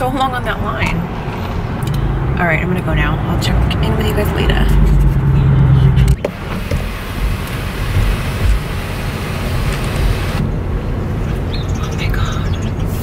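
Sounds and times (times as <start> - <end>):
road and engine noise in car: 0.0 - 13.0.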